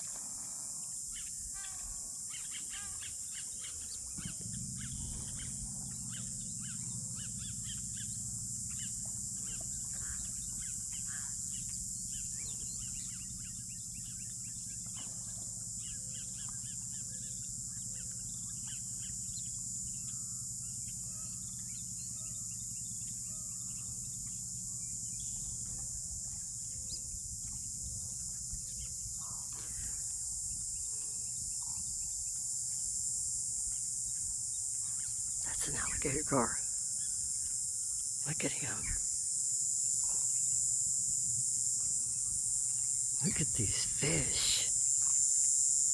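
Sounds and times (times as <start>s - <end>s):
birds calling and chirping: 1.0s - 25.8s, 33.8s - 39.1s
steady high hiss: 43.0s - 44.9s.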